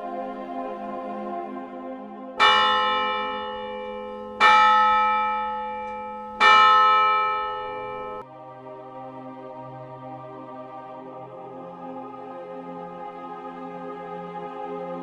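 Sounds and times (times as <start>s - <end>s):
large bell ringing: 2.4s - 8.2s.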